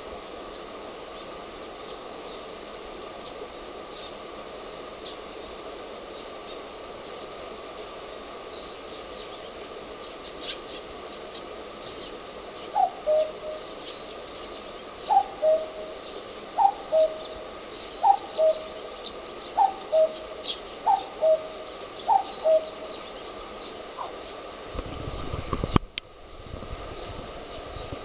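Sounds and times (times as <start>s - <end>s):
small birds chirping: 0.0s - 4.2s, 4.9s - 24.5s, 25.5s - 28.0s
cuckoo calling: 10.2s - 24.4s.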